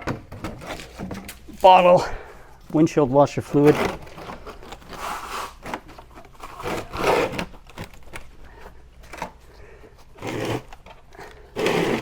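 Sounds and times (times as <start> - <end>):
wheel scraping: 11.5 - 12.0.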